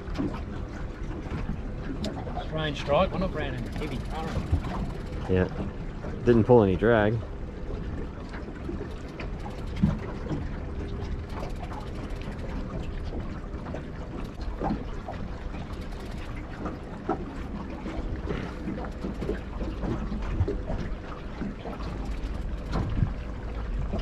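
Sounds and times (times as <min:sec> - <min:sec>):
water lapping against boat hull: 0:00.0 - 0:24.0
wind on microphone: 0:22.7 - 0:24.0.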